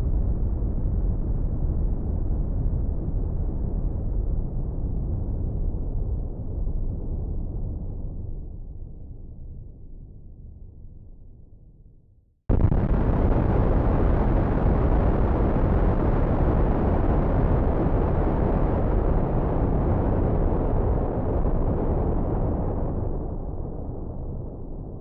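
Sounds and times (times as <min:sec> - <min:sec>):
explosion blast and rumble: 0:12.5 - 0:25.0.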